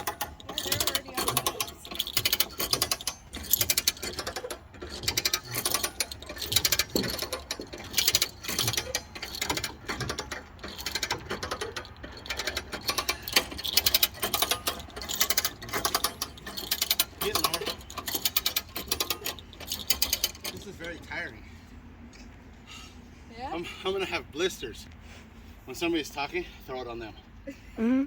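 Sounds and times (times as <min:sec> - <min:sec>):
hand winch ratchet clicking: 0:00.0 - 0:21.2.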